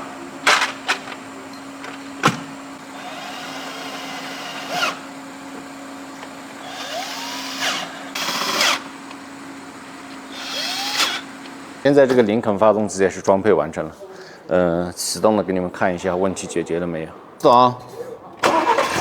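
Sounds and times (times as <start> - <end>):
power tool spinning up: 2.9 - 5.2, 6.1 - 9.2, 10.1 - 11.6.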